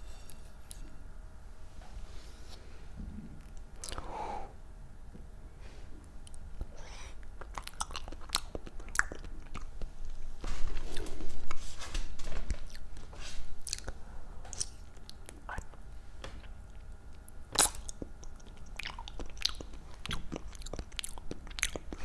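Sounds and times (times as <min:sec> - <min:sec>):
crunchy chewing: 0:07.4 - 0:09.9, 0:16.7 - 0:22.0.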